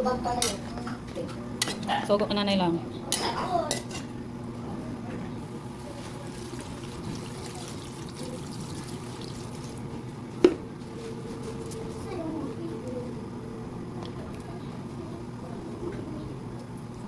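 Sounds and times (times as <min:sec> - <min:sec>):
liquid pouring and trickling: 0:06.2 - 0:09.9.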